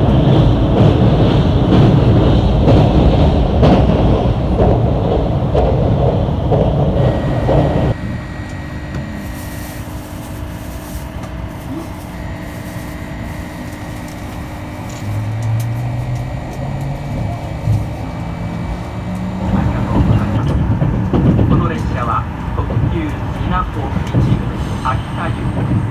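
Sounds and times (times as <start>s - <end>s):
train rumble inside cabin: 0.0s - 25.9s
low hum rising in pitch: 6.3s - 21.4s.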